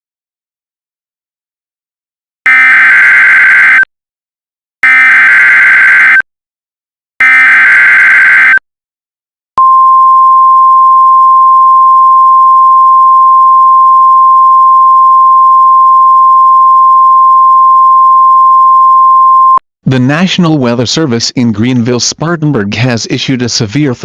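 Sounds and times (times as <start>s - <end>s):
steady warning alarm tone: 2.5s - 3.9s, 4.8s - 6.2s, 7.2s - 8.6s.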